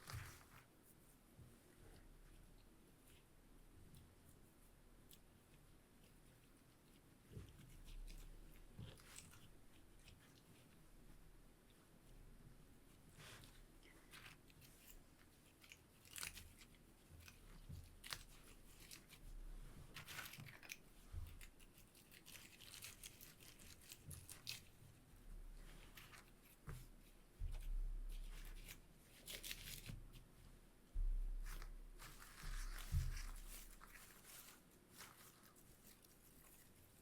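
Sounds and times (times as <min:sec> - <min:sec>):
soft bumps: 0:30.9 - 0:33.8.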